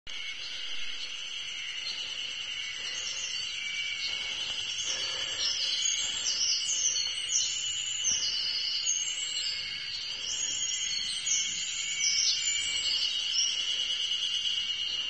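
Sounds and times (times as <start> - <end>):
cicadas droning: 0.1 - 15.0.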